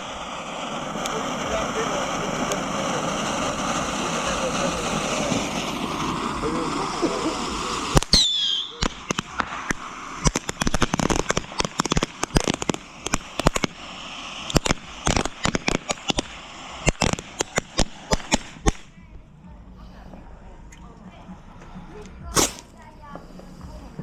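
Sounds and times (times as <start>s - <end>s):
falling firework whistle: 0.0s - 18.4s, 22.3s - 22.7s
firework bangs and crackles: 0.0s - 20.3s, 21.2s - 24.0s.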